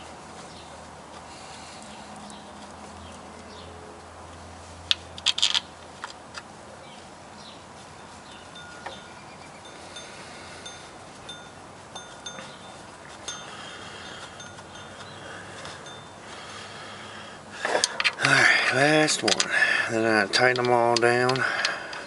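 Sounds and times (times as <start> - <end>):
faint short ringing tones: 8.6 - 16.2
metal clinks of bolts and tools: 17.7 - 19.5.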